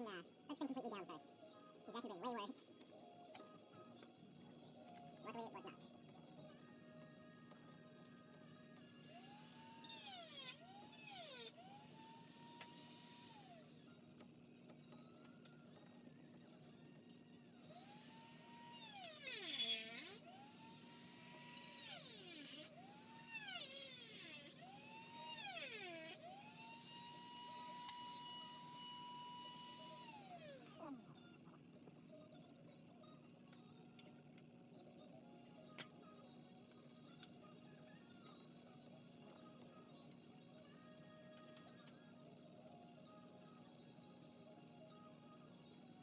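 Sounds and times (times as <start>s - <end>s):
rotary tool spinning: 8.9s - 13.9s, 17.6s - 30.9s.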